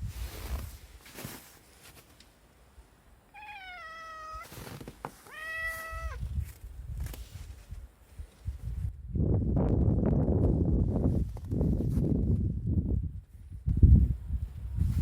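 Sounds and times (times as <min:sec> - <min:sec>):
cat meowing: 0:03.3 - 0:04.6, 0:05.2 - 0:06.3.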